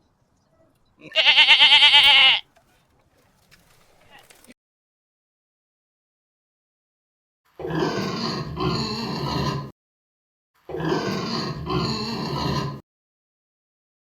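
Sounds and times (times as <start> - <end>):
pig grunting and squealing: 7.6 - 9.7, 10.7 - 12.8.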